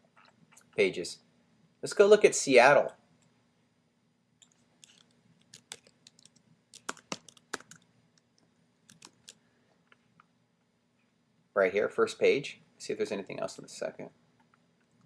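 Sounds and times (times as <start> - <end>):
typing on keyboard: 4.4 - 7.8, 8.9 - 9.4.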